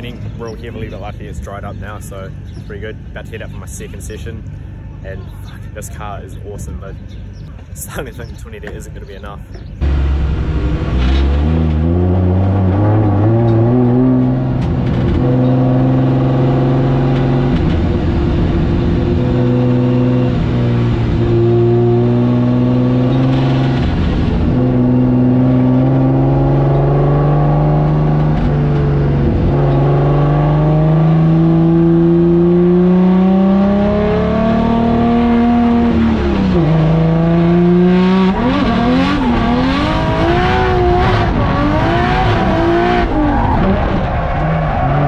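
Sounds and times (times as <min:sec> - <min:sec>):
car engine revving hard: 0:09.8 - 0:45.0.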